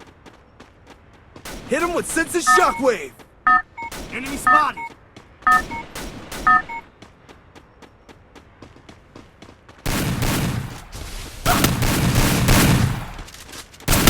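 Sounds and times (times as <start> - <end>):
short electronic beep: 2.4 - 4.9, 5.5 - 5.9, 6.5 - 6.8
video game automatic gunfire: 11.5 - 13.2.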